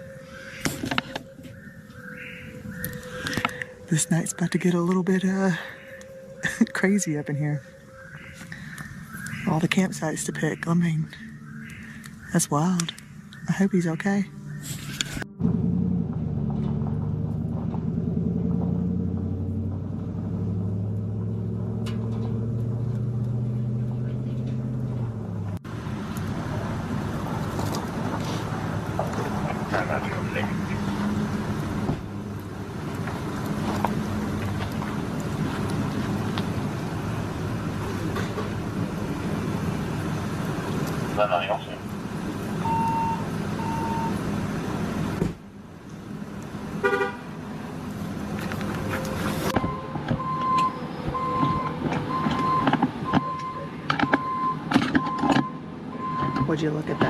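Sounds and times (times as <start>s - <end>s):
rough engine rumble: 0.0s - 57.0s
vehicle engine humming: 0.0s - 57.0s
short electronic beeps: 42.6s - 44.2s
vehicle horn toot: 46.8s - 47.3s.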